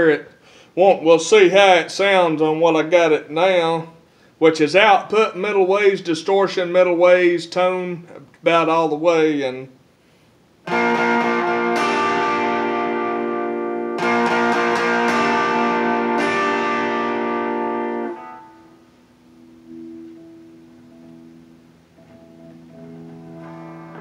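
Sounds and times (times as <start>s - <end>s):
distorted electric guitar chords: 10.6s - 24.0s.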